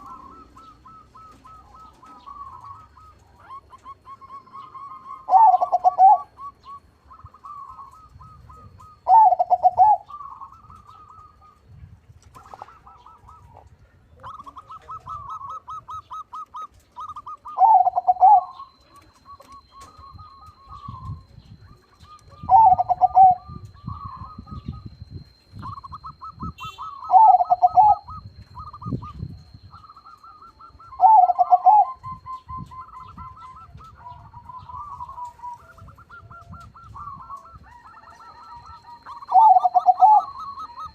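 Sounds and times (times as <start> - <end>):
dove trilling and cooing: 0.0 - 40.9.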